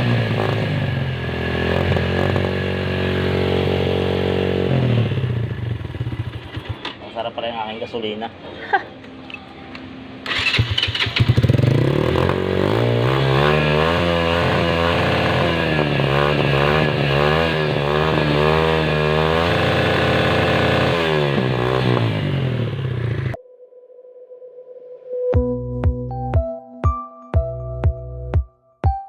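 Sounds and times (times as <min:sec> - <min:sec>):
motorcycle engine running: 0:00.0 - 0:07.7, 0:10.3 - 0:23.4.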